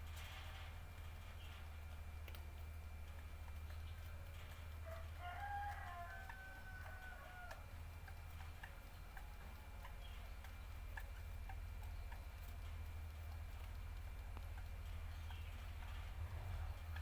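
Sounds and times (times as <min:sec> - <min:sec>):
faint ticking: 0:00.0 - 0:17.0
low hum: 0:00.0 - 0:17.0
rooster crowing: 0:04.8 - 0:08.2.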